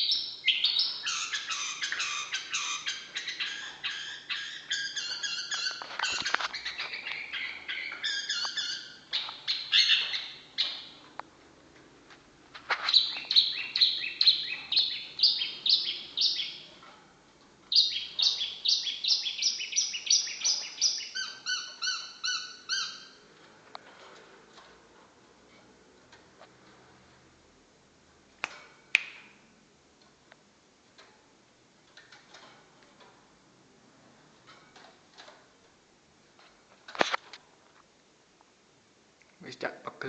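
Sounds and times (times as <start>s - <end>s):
bird singing repeated notes: 0.0s - 11.0s, 12.8s - 16.8s, 17.7s - 23.2s.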